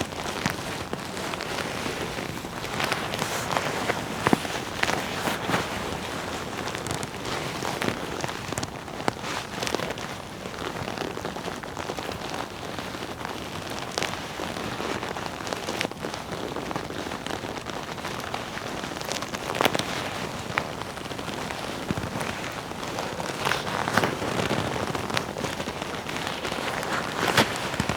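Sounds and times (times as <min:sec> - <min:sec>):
leather jacket rustling: 0:00.0 - 0:08.6, 0:18.9 - 0:27.9
leather creaking: 0:00.0 - 0:12.2, 0:18.3 - 0:27.9.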